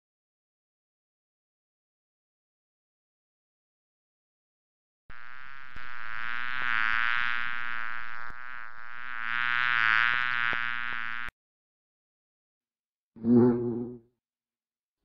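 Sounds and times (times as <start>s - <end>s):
bee buzzing: 5.1s - 11.3s.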